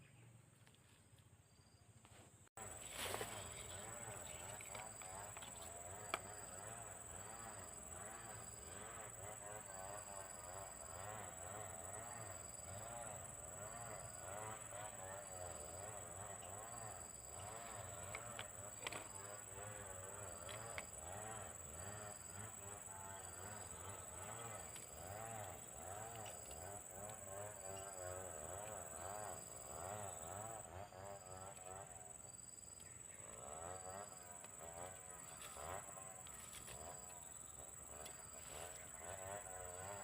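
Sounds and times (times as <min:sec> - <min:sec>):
insect chirping in short pulses: 0:02.6 - 0:40.0
insect high-pitched buzz: 0:02.6 - 0:40.0.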